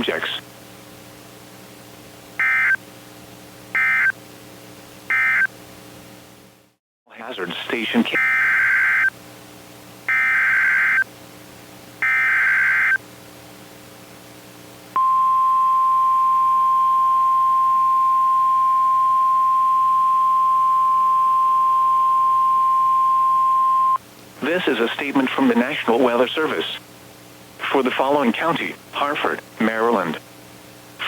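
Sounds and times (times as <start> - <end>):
steady warning alarm tone: 2.4 - 2.8, 3.8 - 4.2, 5.1 - 5.5, 8.2 - 9.1, 10.1 - 11.0, 12.0 - 13.0, 15.0 - 24.0.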